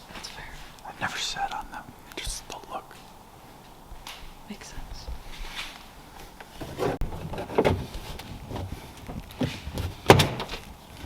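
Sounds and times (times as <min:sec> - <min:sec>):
knocks and clunks: 0:06.5 - 0:10.6.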